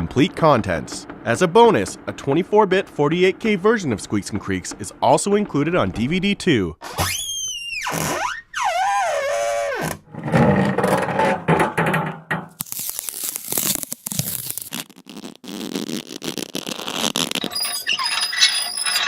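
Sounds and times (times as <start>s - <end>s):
rough pulsing creak: 6.9s - 11.6s, 12.8s - 19.0s
grating crackling creak: 7.1s - 11.5s, 12.6s - 19.0s
gliding wavering squeal: 17.4s - 19.0s.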